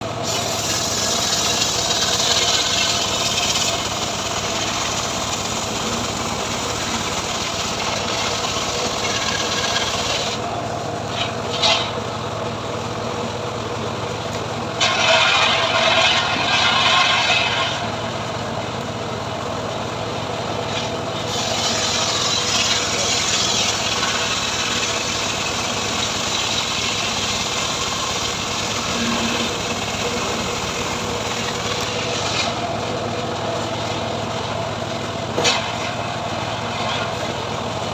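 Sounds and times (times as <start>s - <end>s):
sawmill motor running: 0.0s - 37.9s
saw rasping through log: 0.2s - 10.4s, 14.8s - 17.8s, 20.7s - 34.1s.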